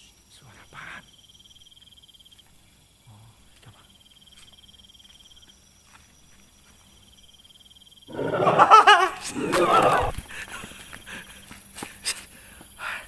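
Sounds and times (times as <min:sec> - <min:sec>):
crickets chirping: 0:00.0 - 0:13.0
wavering voice-like call: 0:08.1 - 0:10.2.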